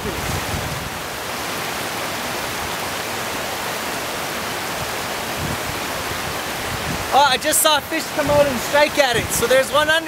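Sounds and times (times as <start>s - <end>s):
stream water flowing: 0.0s - 10.0s.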